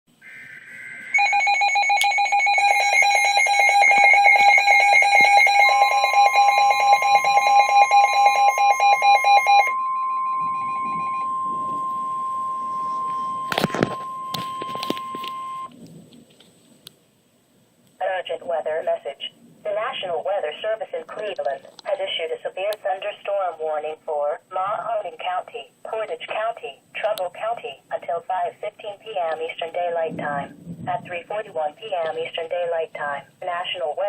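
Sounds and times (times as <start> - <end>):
pulsing electronic alarm beeps: 0.2 - 15.7
steady alarm tone: 0.2 - 15.8.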